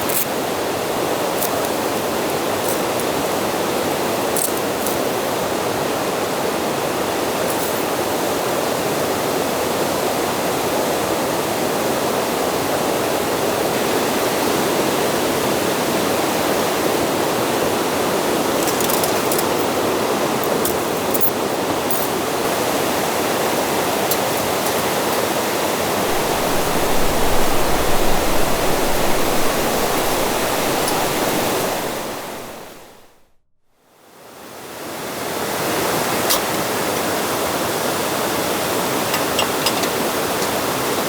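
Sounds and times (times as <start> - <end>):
steady rushing noise: 25.9 - 33.3.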